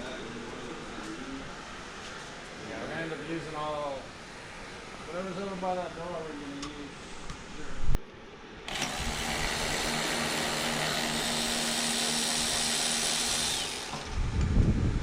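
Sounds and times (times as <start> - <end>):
power tool whirring: 8.7 - 14.5.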